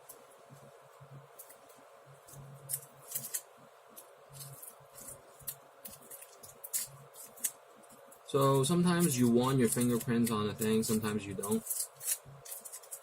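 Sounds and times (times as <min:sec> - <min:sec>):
faint steady hum: 0:00.0 - 0:13.0
computer parts clicking: 0:04.0 - 0:13.0.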